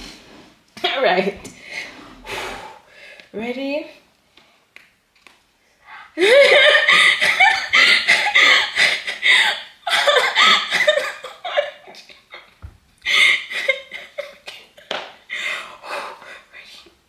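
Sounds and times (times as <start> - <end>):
woman laughing nervously: 6.2 - 14.8.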